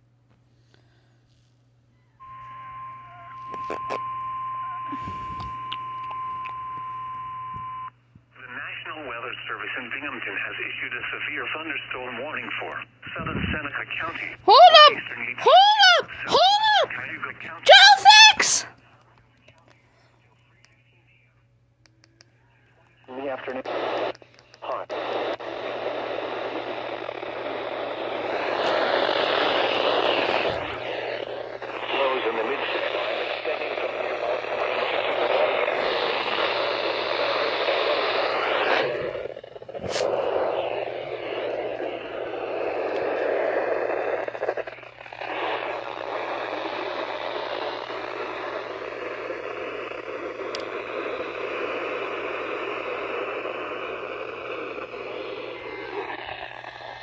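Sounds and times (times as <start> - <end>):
radio static hiss: 8.4 - 18.6, 22.7 - 57.0
faint low hum: 18.6 - 56.5
radio click: 21.8 - 27.2, 28.2 - 38.9, 39.8 - 46.2, 47.2 - 56.2.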